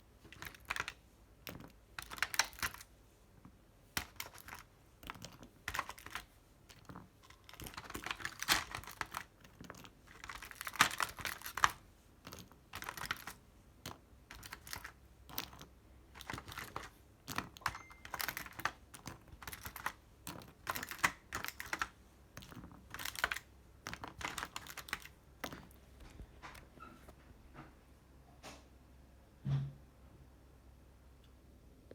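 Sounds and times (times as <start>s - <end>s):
keyboard typing clicks: 12.8s - 25.7s.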